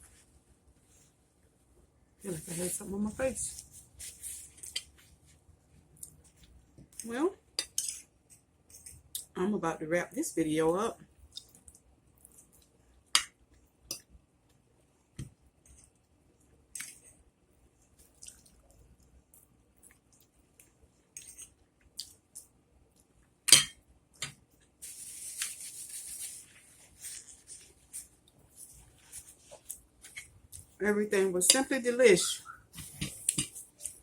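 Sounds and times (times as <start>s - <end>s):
soft hissing noise: 2.2s - 5.4s, 24.8s - 30.3s.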